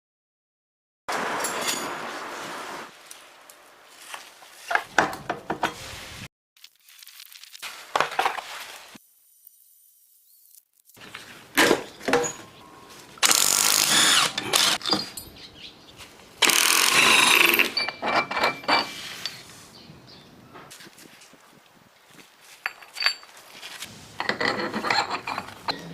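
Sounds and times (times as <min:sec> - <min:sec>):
metal tools clicking and clanking: 0:12.0 - 0:15.4, 0:16.5 - 0:19.4, 0:22.6 - 0:23.4, 0:24.2 - 0:25.9
power tool running in bursts: 0:13.2 - 0:14.8.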